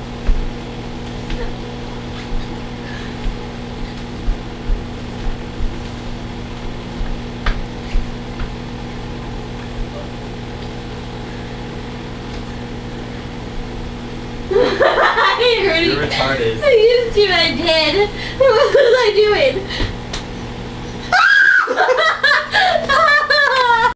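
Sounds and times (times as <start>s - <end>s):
soft low thumps: 0.0s - 8.8s
microwave oven humming: 0.0s - 23.9s.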